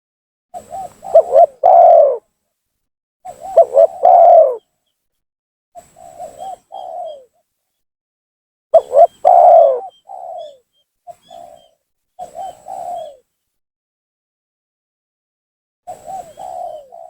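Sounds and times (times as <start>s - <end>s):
dove cooing: 0.6s - 2.2s, 3.3s - 4.6s, 6.1s - 7.3s, 8.8s - 13.2s, 15.9s - 17.0s.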